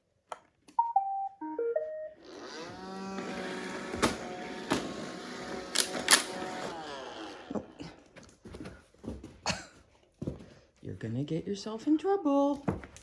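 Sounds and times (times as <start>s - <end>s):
robot vacuum beeping tune: 0.8s - 6.8s
robot vacuum motor hum: 2.2s - 7.8s
sharp clicks: 5.6s - 6.7s.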